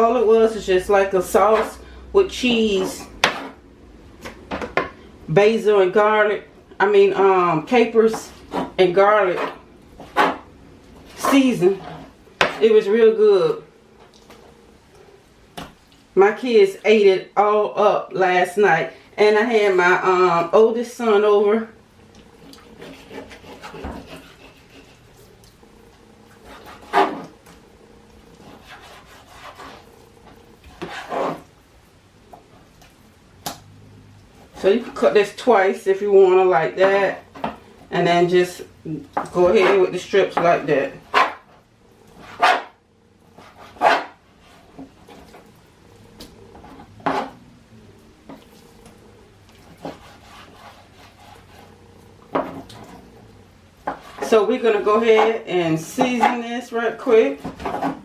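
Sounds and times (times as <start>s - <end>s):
faint knocks and rubbing: 22.4s - 25.4s, 48.2s - 53.1s.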